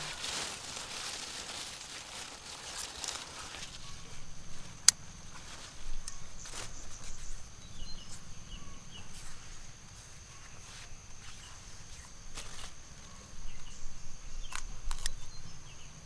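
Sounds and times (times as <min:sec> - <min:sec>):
faint bird chirps: 0:05.8 - 0:16.0.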